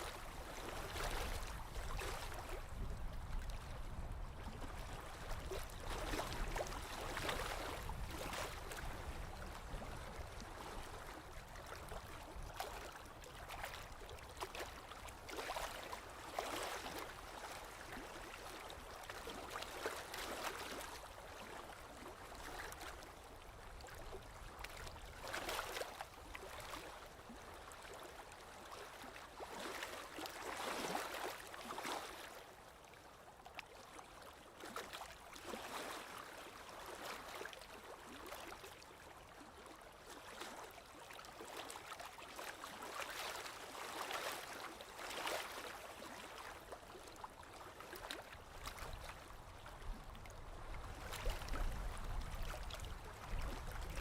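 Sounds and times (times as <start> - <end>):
small waves lapping on shore: 0.0 - 54.0.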